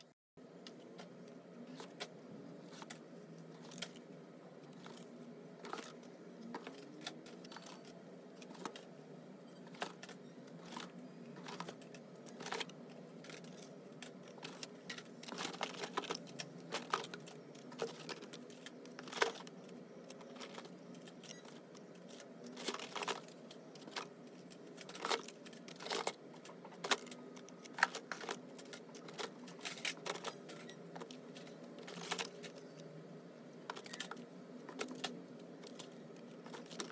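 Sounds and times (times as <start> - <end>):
toy car packs clicking and rattling: 1.7 - 4.0, 4.6 - 9.0, 9.6 - 32.9, 33.7 - 36.9.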